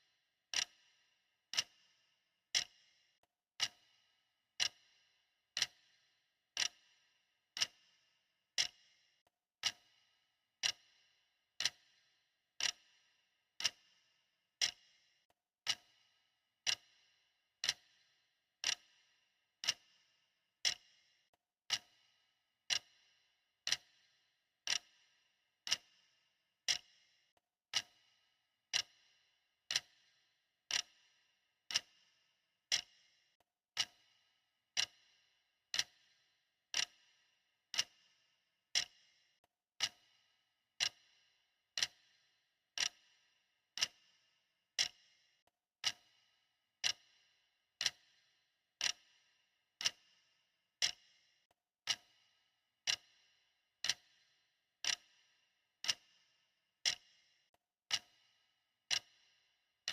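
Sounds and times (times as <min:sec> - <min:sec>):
clock ticking: 0:00.5 - 0:00.8, 0:01.5 - 0:01.8, 0:02.5 - 0:02.8, 0:03.6 - 0:03.8, 0:04.6 - 0:04.8, 0:05.6 - 0:05.8, 0:06.6 - 0:06.8, 0:07.6 - 0:07.8, 0:08.6 - 0:08.8, 0:09.6 - 0:09.9, 0:10.6 - 0:10.9, 0:11.6 - 0:11.9, 0:12.6 - 0:12.9, 0:13.6 - 0:13.9, 0:14.6 - 0:14.8, 0:15.6 - 0:16.0, 0:16.6 - 0:16.9, 0:17.6 - 0:18.0, 0:18.6 - 0:18.9, 0:19.6 - 0:19.9, 0:20.6 - 0:20.8, 0:21.7 - 0:22.0, 0:22.7 - 0:23.0, 0:23.7 - 0:24.0, 0:24.7 - 0:24.9, 0:25.7 - 0:25.9, 0:26.7 - 0:26.9, 0:27.7 - 0:28.0, 0:28.7 - 0:29.0, 0:29.7 - 0:30.0, 0:30.7 - 0:31.0, 0:31.7 - 0:31.9, 0:32.7 - 0:32.9, 0:33.8 - 0:34.0, 0:34.7 - 0:35.0, 0:35.7 - 0:36.0, 0:36.7 - 0:37.0, 0:37.7 - 0:38.0, 0:38.7 - 0:39.0, 0:39.8 - 0:40.0, 0:40.8 - 0:41.0, 0:41.8 - 0:42.0, 0:42.8 - 0:43.0, 0:43.8 - 0:44.0, 0:44.8 - 0:45.0, 0:45.8 - 0:46.1, 0:46.8 - 0:47.1, 0:47.8 - 0:48.0, 0:48.8 - 0:49.1, 0:49.8 - 0:50.1, 0:50.8 - 0:51.0, 0:51.8 - 0:52.2, 0:52.8 - 0:53.1, 0:53.8 - 0:54.2, 0:54.8 - 0:55.1, 0:55.8 - 0:56.1, 0:56.8 - 0:57.1, 0:57.9 - 0:58.2, 0:58.9 - 0:59.2.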